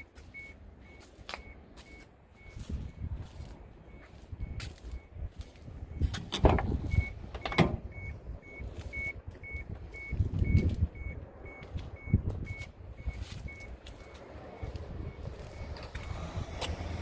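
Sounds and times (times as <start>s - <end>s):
car warning chime beeping: 0.0s - 17.0s
clunks and knocks of car: 6.1s - 8.1s.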